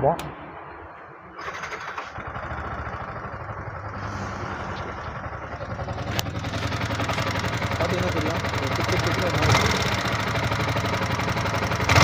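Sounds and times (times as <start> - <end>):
motorcycle engine idling: 1.7 - 12.0.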